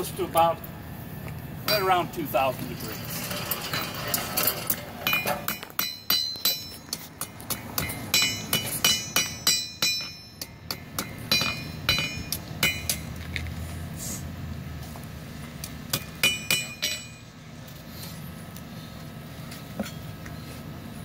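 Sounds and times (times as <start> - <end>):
hammer striking metal on anvil: 1.7 - 2.1, 4.7 - 13.1, 15.9 - 17.2.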